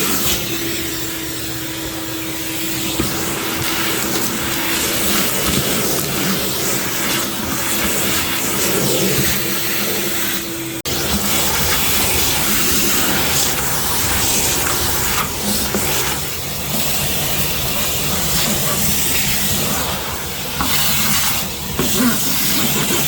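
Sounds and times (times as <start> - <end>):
wet dry vacuum running: 0.0 - 23.0.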